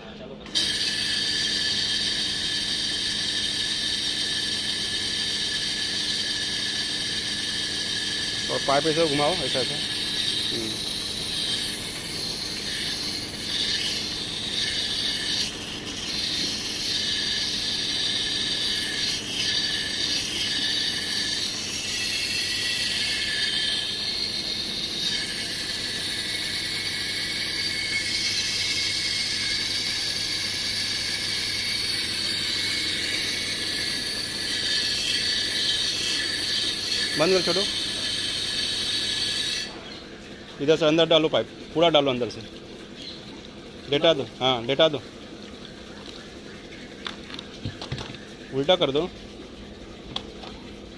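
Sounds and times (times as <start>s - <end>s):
pressure washer water jet hiss: 8.0s - 11.4s, 35.5s - 39.3s.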